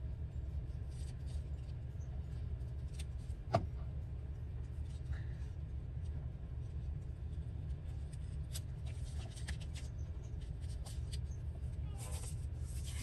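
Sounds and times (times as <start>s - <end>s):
steady low hum: 0.0s - 13.0s
paper rustling: 7.8s - 11.3s, 11.9s - 13.0s.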